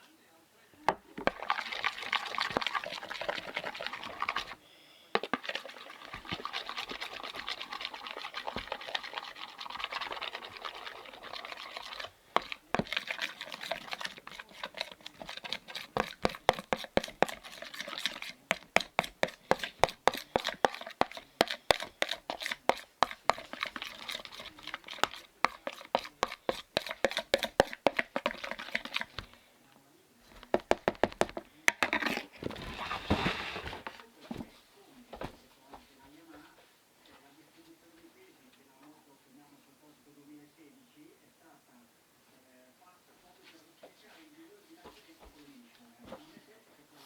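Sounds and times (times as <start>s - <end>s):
wet scraping in a bowl: 1.2s - 4.6s, 5.2s - 29.5s, 30.3s - 34.1s.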